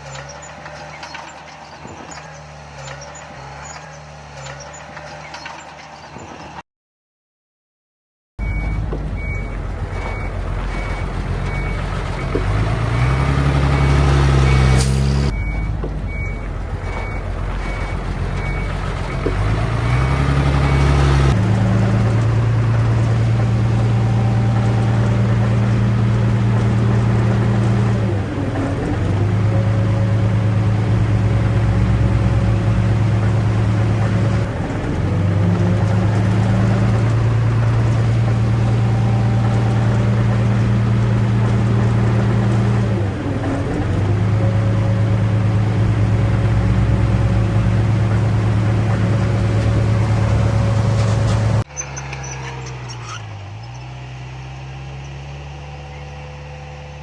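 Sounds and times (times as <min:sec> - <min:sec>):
diesel engine revving: 0:00.0 - 0:06.6, 0:08.4 - 0:57.0
reversing alarm beeping: 0:08.4 - 0:21.4.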